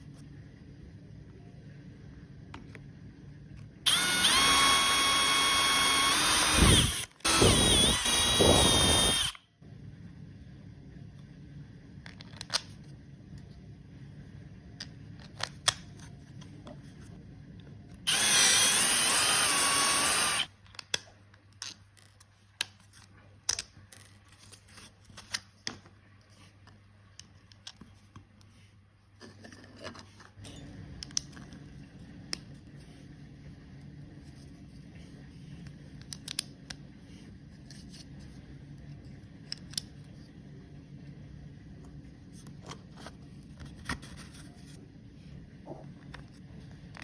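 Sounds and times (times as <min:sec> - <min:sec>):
small electric motor whirring: 0:03.8 - 0:09.4, 0:18.1 - 0:20.5.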